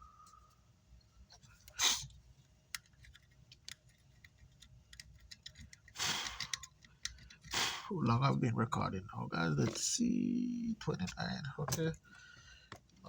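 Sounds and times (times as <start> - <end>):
hand tools clicking and tapping: 2.7 - 7.6.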